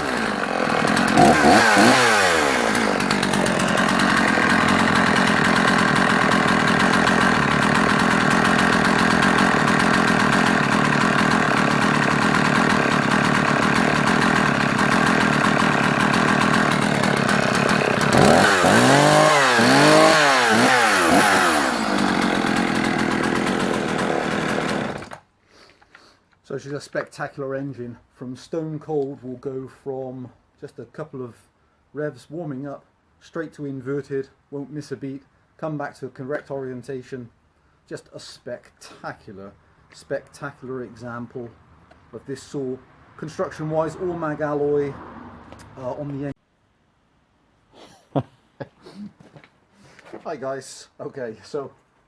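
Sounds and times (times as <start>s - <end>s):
chainsaw revving: 0.0s - 25.2s.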